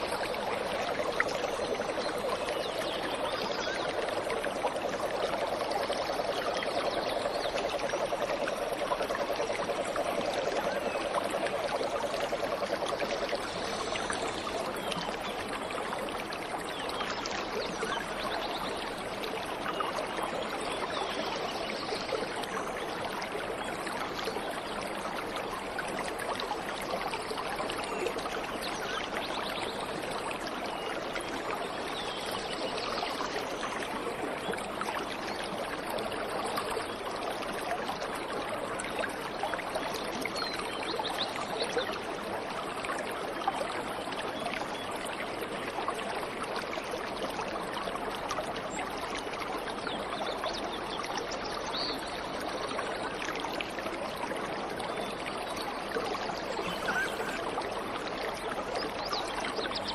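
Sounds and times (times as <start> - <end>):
faint bird calls: 56.5 - 57.6.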